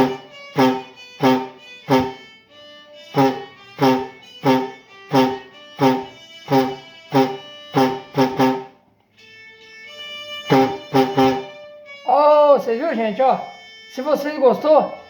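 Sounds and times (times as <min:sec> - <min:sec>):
steady held note: 0:00.0 - 0:02.4, 0:03.0 - 0:08.8, 0:10.4 - 0:14.2.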